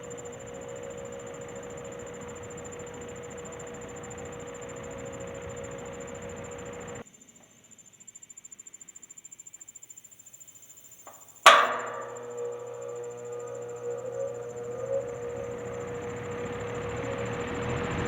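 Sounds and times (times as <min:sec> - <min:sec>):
faint rapid pulsing: 0:00.0 - 0:07.0, 0:11.0 - 0:18.0
fan motor humming: 0:00.0 - 0:07.0, 0:11.4 - 0:18.0
fan switch click: 0:00.0 - 0:07.0, 0:11.1 - 0:17.4
window fan running: 0:00.0 - 0:07.0, 0:11.4 - 0:18.0.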